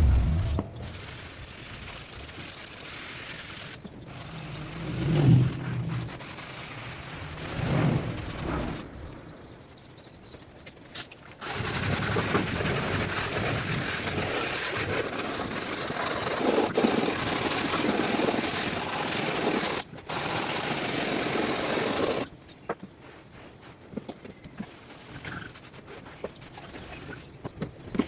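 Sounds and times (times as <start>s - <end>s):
rough noisy machine running: 0.0s - 3.1s.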